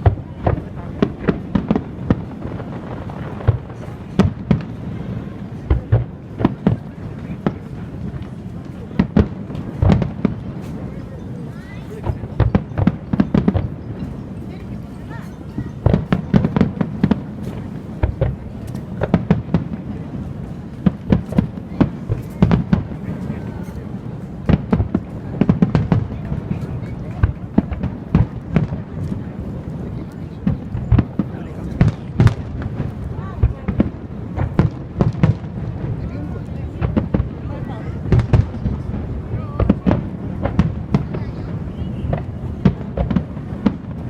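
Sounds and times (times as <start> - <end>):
fireworks bangs: 0.0 - 44.0.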